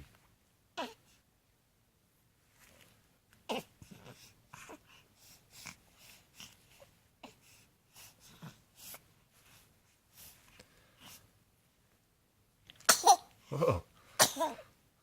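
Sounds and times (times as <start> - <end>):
baby snuffly breathing: 3.5 - 11.3.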